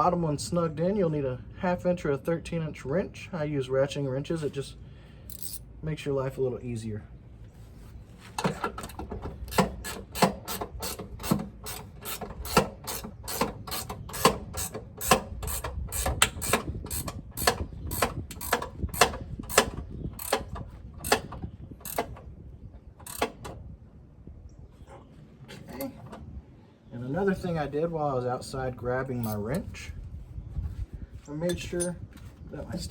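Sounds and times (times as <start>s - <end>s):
ratcheting wrench clicking: 5.3s - 5.6s, 9.5s - 22.1s, 23.0s - 23.4s.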